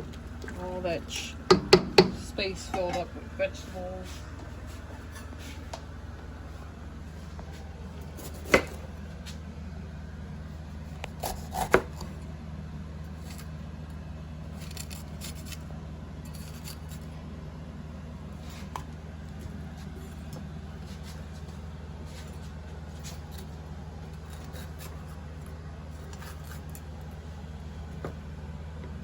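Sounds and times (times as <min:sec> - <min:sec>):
steady low hum: 0:00.0 - 0:29.0
utensils knocking on hard surface: 0:01.5 - 0:03.1.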